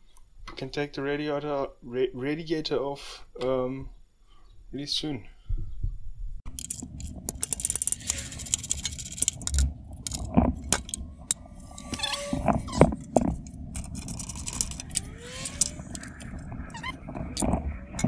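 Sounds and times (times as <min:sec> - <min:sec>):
short squeaky whines: 0:11.6 - 0:13.2, 0:14.3 - 0:18.0.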